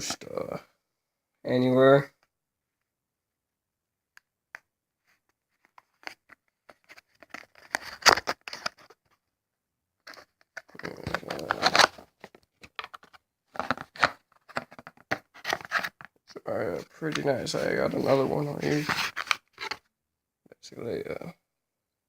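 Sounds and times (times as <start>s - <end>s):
packaging clicks and rustles: 5.7s - 9.1s, 10.1s - 16.2s, 17.1s - 19.8s
packaging tearing: 10.7s - 12.1s, 17.6s - 19.8s.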